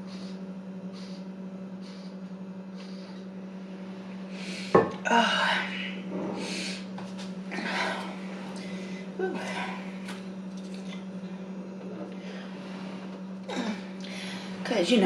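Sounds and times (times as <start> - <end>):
breathy exhales: 0.0 - 3.4, 5.4 - 6.9, 12.2 - 14.6
low steady hum: 0.0 - 15.0.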